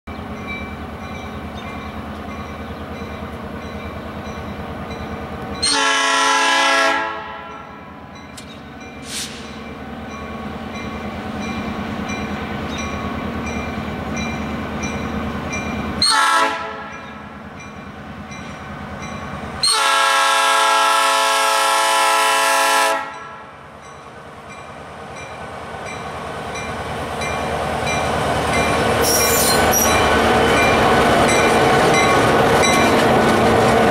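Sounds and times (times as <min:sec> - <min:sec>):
diesel locomotive engine rumbling: 0:00.1 - 0:33.9
locomotive horn blasts: 0:05.6 - 0:07.7, 0:16.0 - 0:17.0, 0:19.6 - 0:23.5.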